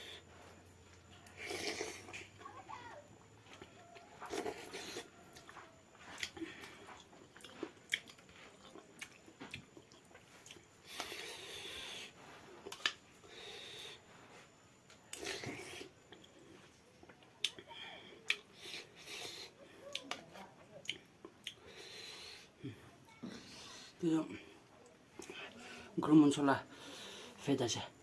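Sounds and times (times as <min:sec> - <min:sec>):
person chewing porridge: 0:00.0 - 0:28.0.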